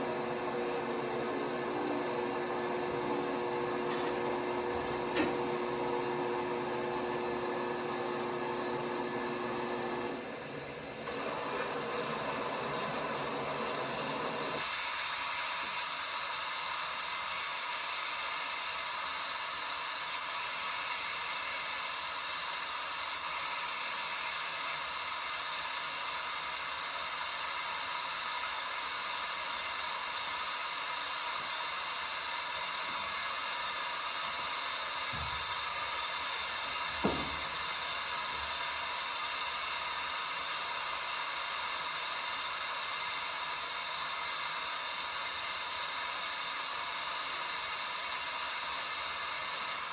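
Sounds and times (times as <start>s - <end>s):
washing machine water hiss: 2.2s - 10.1s, 11.0s - 49.9s
short thump: 35.1s - 35.5s, 37.0s - 37.7s.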